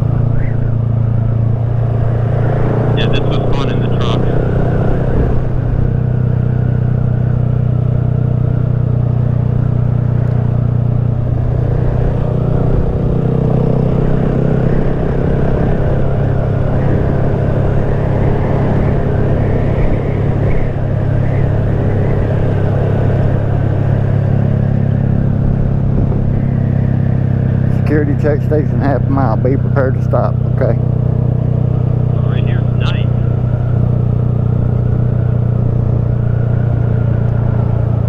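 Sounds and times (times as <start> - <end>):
motorcycle engine running: 0.0 - 38.0.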